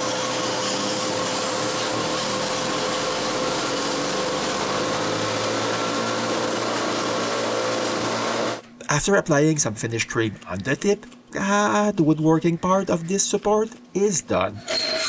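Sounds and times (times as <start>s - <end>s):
wood lathe motor hum: 0.0s - 8.6s.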